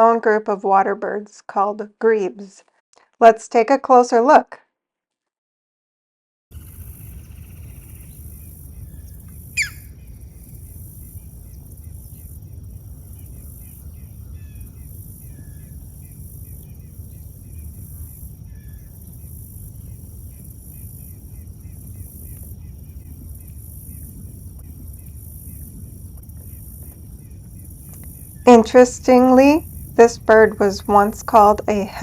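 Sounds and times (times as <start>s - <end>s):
small birds chirping: 6.6s - 28.8s
steady low rumble: 6.6s - 32.0s
sharp downward-sweeping bird call: 9.6s - 9.9s.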